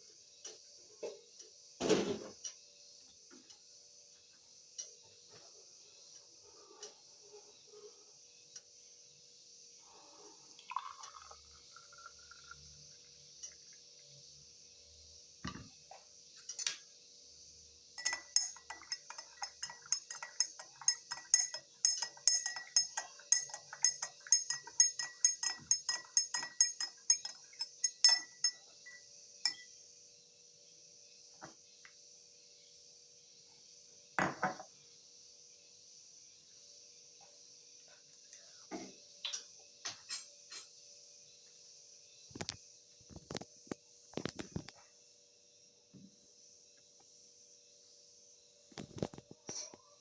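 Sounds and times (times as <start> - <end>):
spoon clinking in a cup: 10.6 - 13.8, 16.4 - 16.8, 18.0 - 29.8, 39.2 - 40.7.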